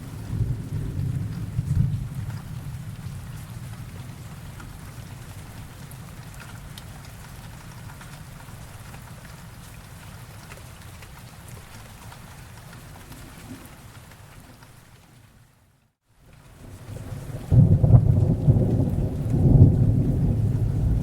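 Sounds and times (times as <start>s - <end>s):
thunder rumble: 0.0s - 5.8s, 16.8s - 21.0s
steady rain: 0.0s - 21.0s.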